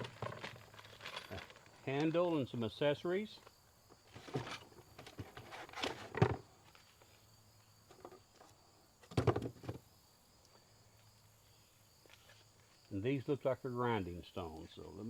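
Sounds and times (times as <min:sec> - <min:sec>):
packaging rustling and knocking: 0:00.0 - 0:01.7.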